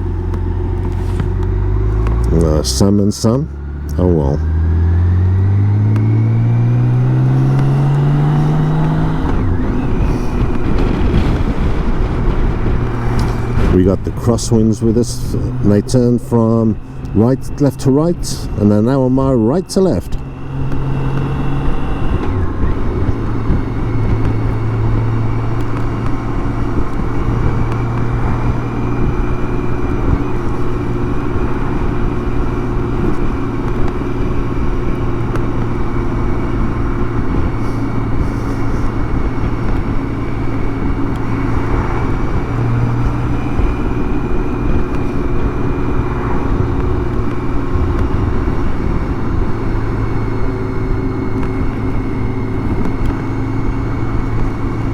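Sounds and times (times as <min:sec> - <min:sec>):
motorcycle engine cruising: 0:00.0 - 0:54.9
wind noise: 0:04.4 - 0:54.9.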